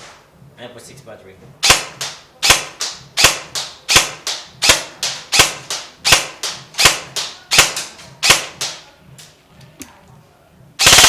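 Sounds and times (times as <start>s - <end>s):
airsoft gun shots: 1.6s - 8.8s, 10.8s - 11.0s.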